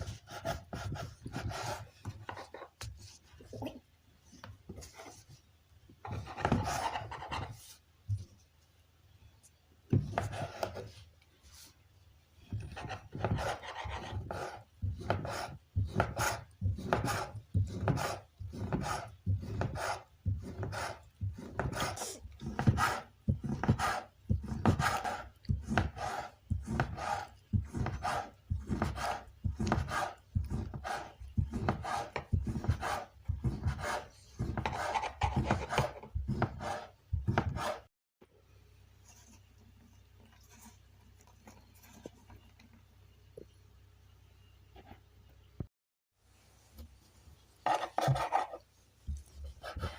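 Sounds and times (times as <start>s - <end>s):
dough scraping on wooden board: 6.1s - 7.8s, 12.5s - 37.9s, 47.6s - 49.9s.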